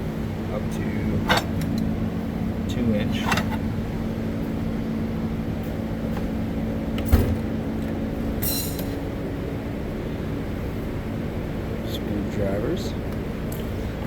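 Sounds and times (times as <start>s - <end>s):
steady low hum: 0.0s - 14.0s
metal drawer shutting with a knock: 7.0s - 7.5s.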